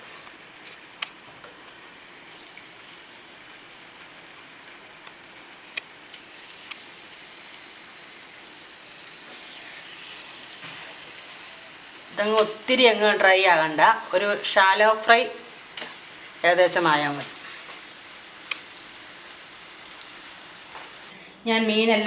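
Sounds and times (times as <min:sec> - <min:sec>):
fish frying in oil: 0:00.0 - 0:21.1.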